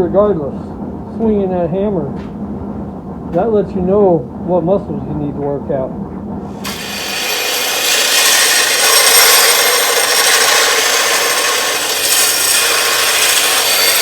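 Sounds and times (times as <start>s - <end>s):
power grinder grinding metal: 6.6s - 14.0s.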